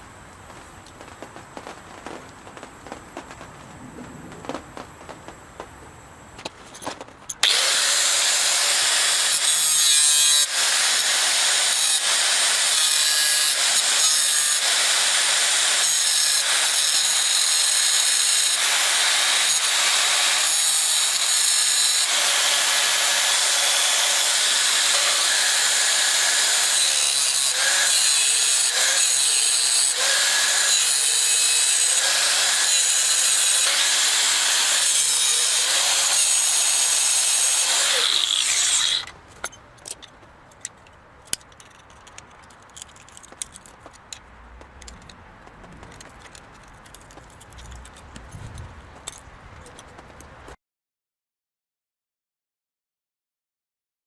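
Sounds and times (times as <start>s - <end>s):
tool rasping and scraping: 6.7s - 40.0s.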